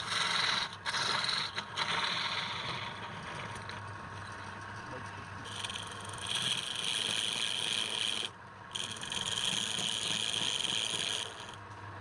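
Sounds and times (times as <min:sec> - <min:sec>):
wood lathe hissing rasp: 0:00.0 - 0:03.7, 0:05.5 - 0:11.6.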